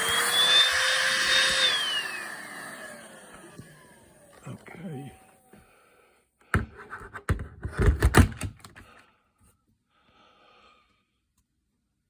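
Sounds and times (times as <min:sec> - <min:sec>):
plastic clunks and scraping: 0:06.4 - 0:09.0.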